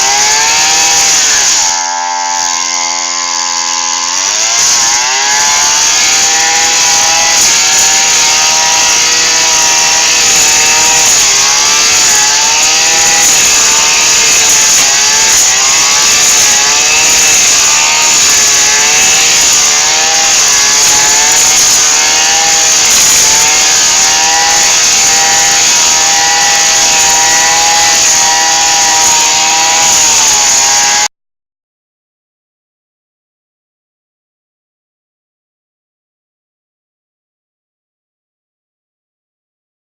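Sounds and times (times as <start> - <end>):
lawn mower engine running: 0.0 - 31.1.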